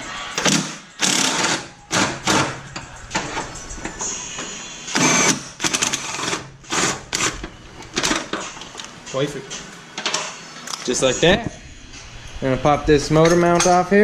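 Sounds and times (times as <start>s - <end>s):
impact wrench bursts: 0.4s - 2.6s, 4.9s - 7.4s.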